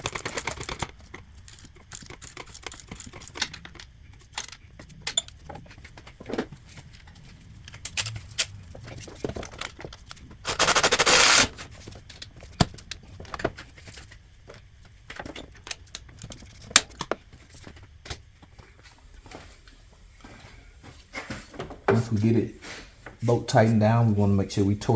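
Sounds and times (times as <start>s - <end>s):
ratchet wrench clicking rapidly: 0.0s - 3.6s, 7.9s - 8.6s, 10.5s - 11.5s.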